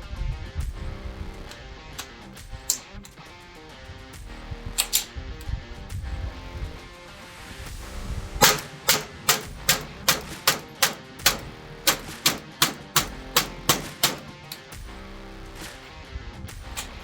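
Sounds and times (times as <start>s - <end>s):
semi-automatic rifle shots: 8.2s - 14.8s, 16.7s - 17.0s.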